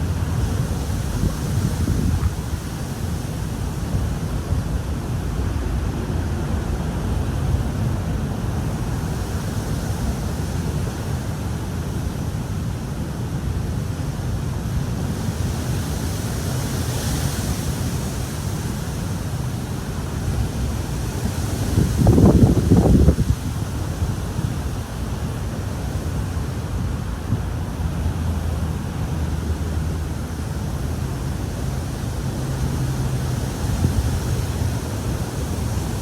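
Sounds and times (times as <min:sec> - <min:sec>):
wind buffeting microphone: 0:00.0 - 0:12.0, 0:17.3 - 0:36.0.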